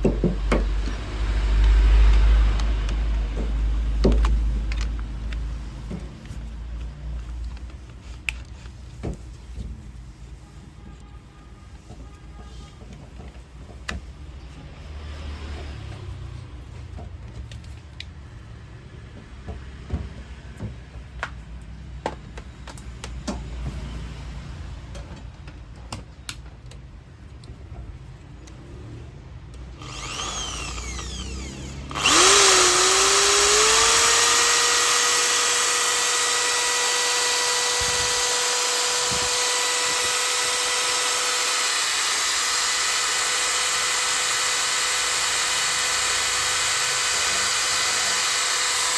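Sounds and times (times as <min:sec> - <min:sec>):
impact drill motor whining: 0:29.8 - 0:48.9.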